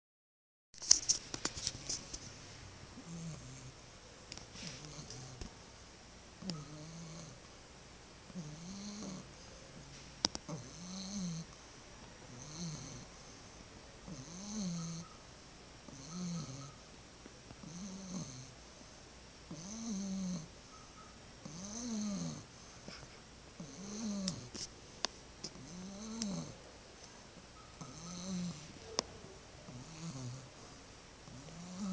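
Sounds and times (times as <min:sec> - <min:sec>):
person snoring: 0:08.4 - 0:09.3, 0:10.5 - 0:11.5, 0:12.3 - 0:13.1, 0:15.9 - 0:16.7, 0:17.6 - 0:18.5, 0:19.5 - 0:20.5, 0:21.5 - 0:24.5, 0:25.6 - 0:26.6, 0:27.9 - 0:28.7, 0:29.7 - 0:30.7, 0:31.3 - 0:31.9.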